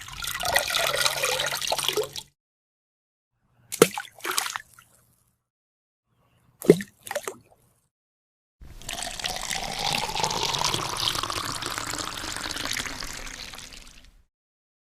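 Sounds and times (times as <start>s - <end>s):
water pouring: 0.0s - 2.3s, 8.7s - 14.3s.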